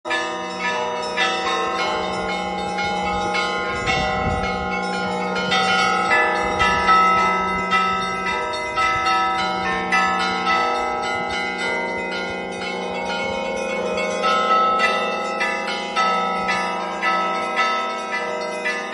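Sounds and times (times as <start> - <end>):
church bells ringing: 0.0 - 18.9.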